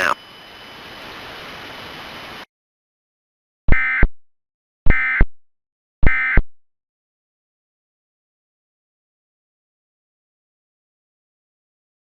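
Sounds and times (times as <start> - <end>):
digital data noise bursts: 0.0 - 0.2.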